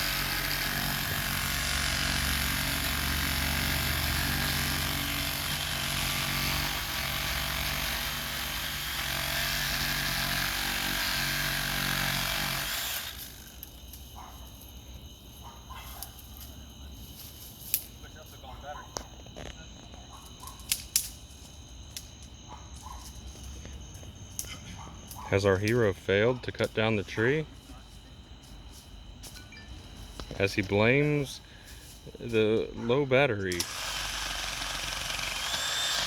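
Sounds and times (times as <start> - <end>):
reciprocating saw cutting wood: 0.0 - 13.6, 33.5 - 36.0.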